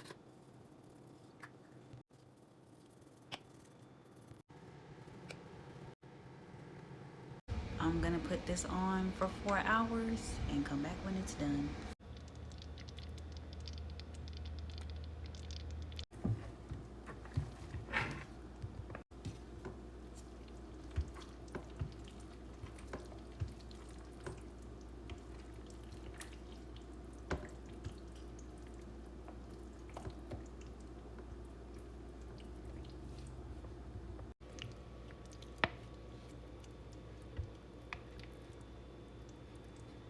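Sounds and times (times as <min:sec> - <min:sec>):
slow cooker low hum: 0:00.0 - 0:40.0
sauce dripping and popping: 0:12.0 - 0:16.1, 0:18.9 - 0:33.3, 0:34.4 - 0:40.0.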